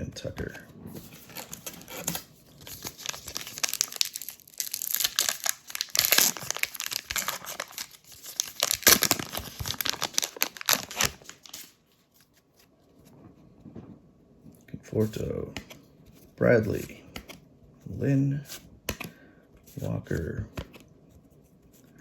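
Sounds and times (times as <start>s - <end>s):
wrapper tearing and crinkling: 1.2s - 11.8s.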